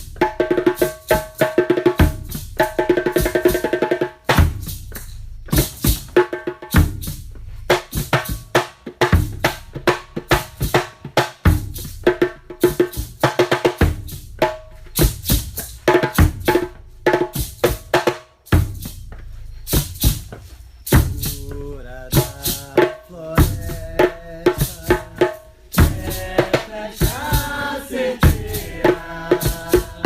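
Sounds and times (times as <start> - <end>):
hand drums struck rhythmically: 0.0 - 30.0
deep bass drum thumps: 13.8 - 17.9, 18.5 - 22.6, 23.4 - 27.6, 28.2 - 30.0.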